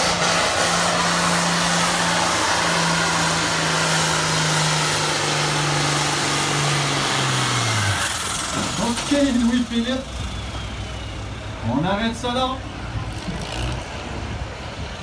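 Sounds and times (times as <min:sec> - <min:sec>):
tractor engine under load: 0:00.0 - 0:14.2.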